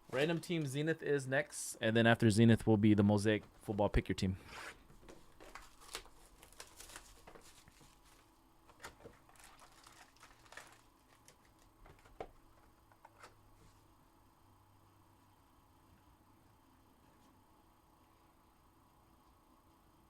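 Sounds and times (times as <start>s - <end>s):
packaging crinkling and tearing: 5.3s - 12.1s.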